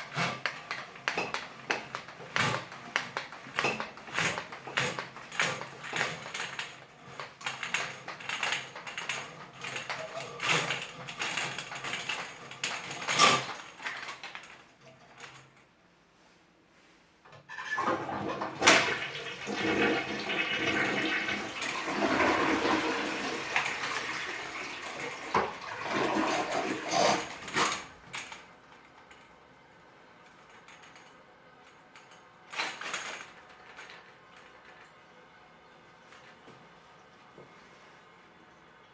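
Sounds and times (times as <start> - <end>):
toilet flushing: 17.4 - 28.0.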